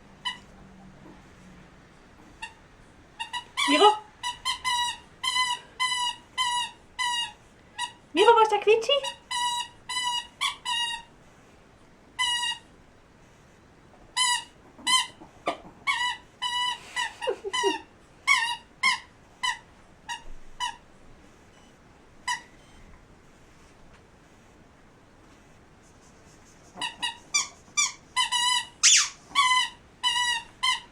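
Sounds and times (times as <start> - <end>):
squeaky dog toy squeaking: 0.2 - 0.6, 3.2 - 8.0, 9.0 - 11.1, 12.2 - 12.7, 14.2 - 20.8, 22.2 - 22.6, 26.8 - 30.9.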